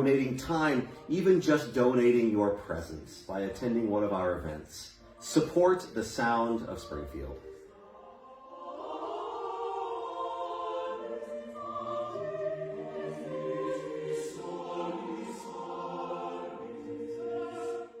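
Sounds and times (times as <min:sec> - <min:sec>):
mixed choir singing: 0:05.0 - 0:18.0.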